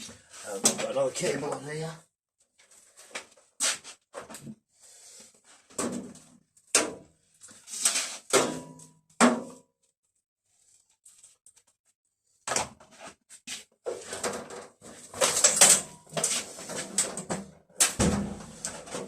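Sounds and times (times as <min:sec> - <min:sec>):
knocks and clatters of hands working: 0:12.4 - 0:19.0.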